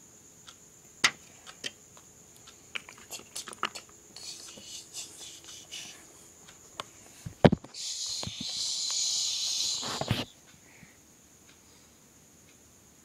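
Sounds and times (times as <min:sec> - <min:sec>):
toy pieces clicking and tapping: 0:01.0 - 0:06.0, 0:07.8 - 0:10.2.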